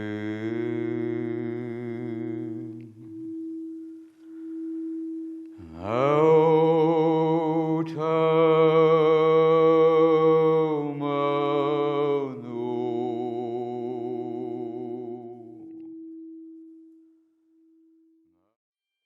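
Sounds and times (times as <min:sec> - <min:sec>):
voices chanting held notes: 0:05.6 - 0:15.6.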